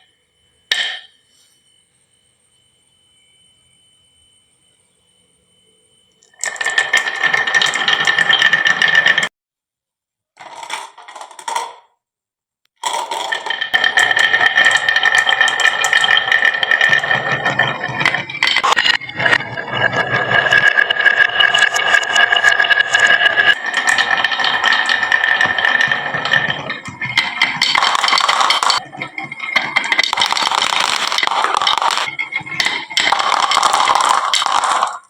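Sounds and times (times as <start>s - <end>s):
glass marbles rattling down wooden run: 6.2s - 9.3s, 12.8s - 35.0s.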